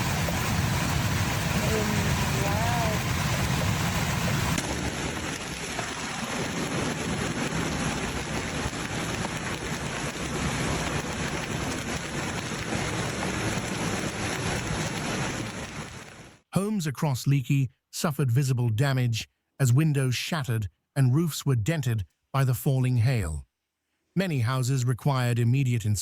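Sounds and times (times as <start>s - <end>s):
hail and heavy rain pelting: 0.0s - 16.4s.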